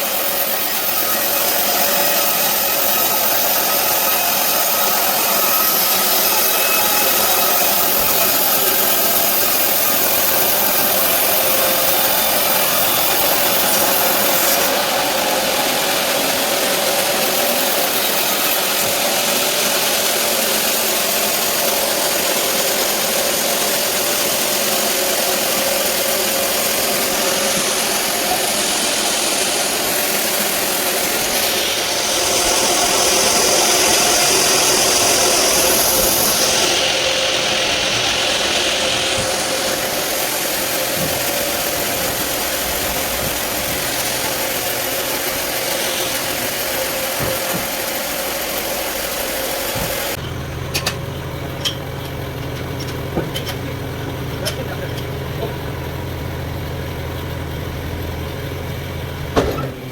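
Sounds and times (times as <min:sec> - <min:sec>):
sawmill machine noise: 0:00.0 - 0:59.9
steady saw whine: 0:00.0 - 0:59.9.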